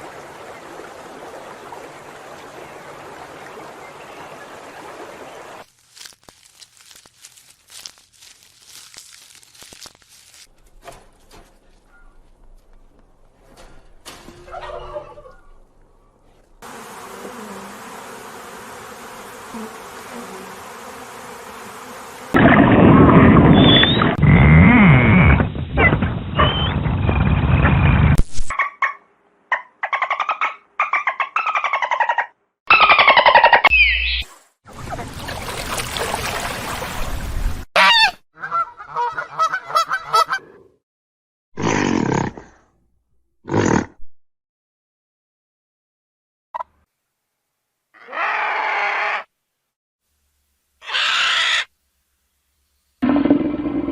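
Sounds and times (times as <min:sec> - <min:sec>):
insects buzzing: 0:16.6 - 0:22.4
geese honking: 0:37.8 - 0:40.4.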